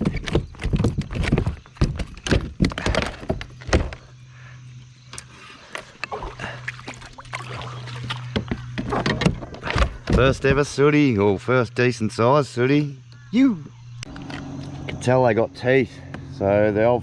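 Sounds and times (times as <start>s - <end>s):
knocks and thumps on a kayak: 0.0s - 4.2s, 7.8s - 10.7s
steady low hum: 0.0s - 17.0s.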